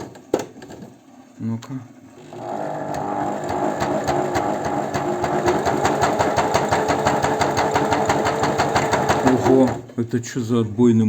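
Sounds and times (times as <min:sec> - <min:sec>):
sewing machine stitching: 0:02.2 - 0:10.0.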